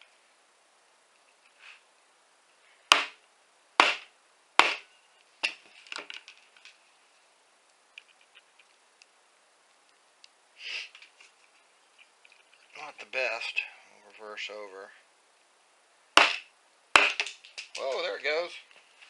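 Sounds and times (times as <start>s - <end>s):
rubber mallet striking knife: 3.8s - 4.9s.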